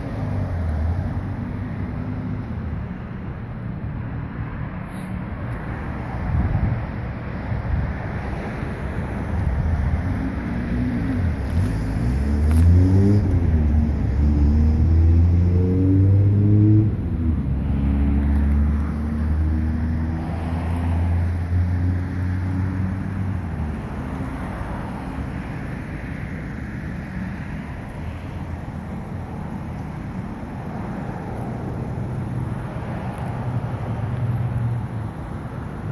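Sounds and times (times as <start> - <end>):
car engine revving: 10.1 - 23.2.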